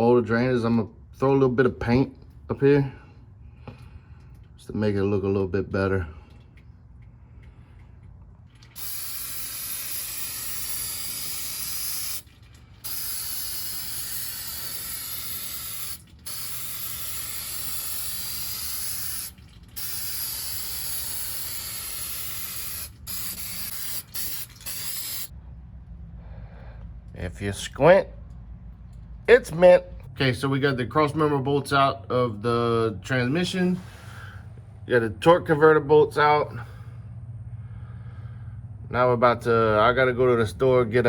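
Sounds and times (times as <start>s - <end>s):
spray paint can hissing: 8.6s - 25.3s.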